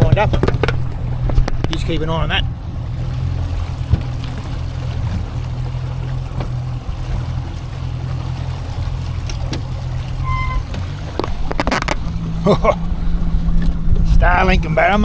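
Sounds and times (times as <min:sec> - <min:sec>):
low engine hum: 0:00.0 - 0:15.0.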